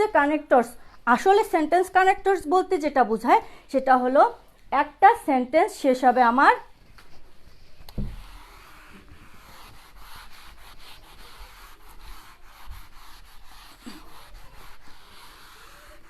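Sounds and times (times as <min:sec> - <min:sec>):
pen scratching on paper: 0:07.9 - 0:16.0.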